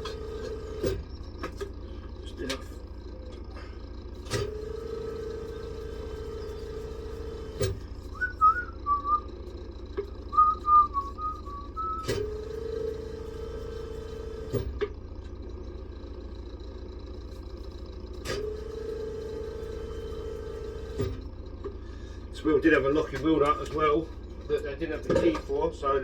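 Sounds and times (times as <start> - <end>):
machine hum: 0.0 - 16.1
person whistling a tune: 8.1 - 9.3, 10.3 - 12.1.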